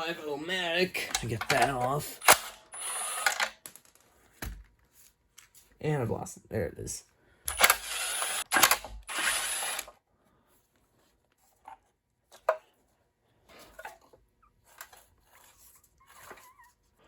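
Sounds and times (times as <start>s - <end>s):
metal parts clicking and tapping: 1.1s - 2.5s.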